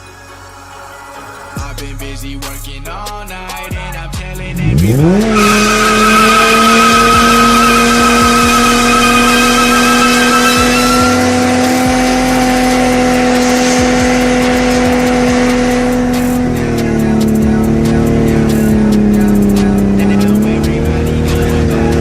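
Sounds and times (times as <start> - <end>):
car engine at high revs: 4.4 - 22.0
tyres squealing: 4.7 - 12.8.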